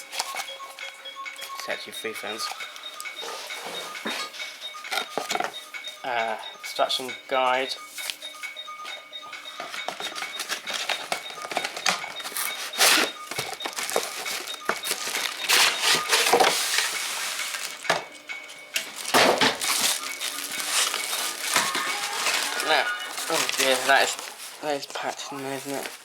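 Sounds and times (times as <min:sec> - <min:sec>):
plastic packaging crinkling: 0:09.6 - 0:18.0, 0:18.8 - 0:26.0.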